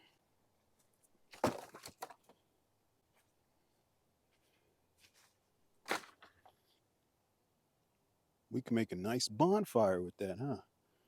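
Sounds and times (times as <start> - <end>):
sharp cracks and knocks: 1.3 - 2.4, 5.9 - 6.5.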